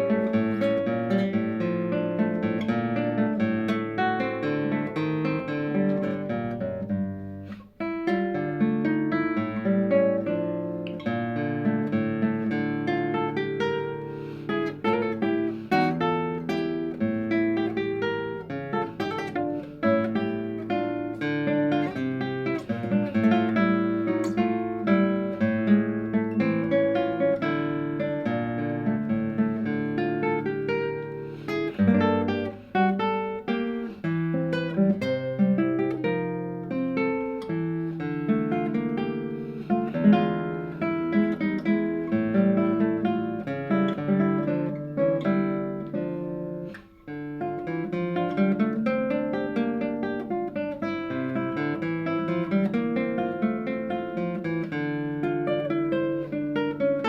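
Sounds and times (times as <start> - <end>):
classical guitar plucking: 0.0 - 57.0.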